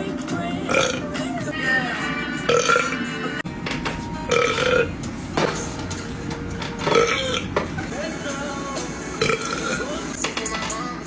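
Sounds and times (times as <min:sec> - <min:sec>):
background music: 0:00.0 - 0:11.0
man belching: 0:00.7 - 0:01.1, 0:02.5 - 0:03.0, 0:06.9 - 0:07.6, 0:09.2 - 0:09.9.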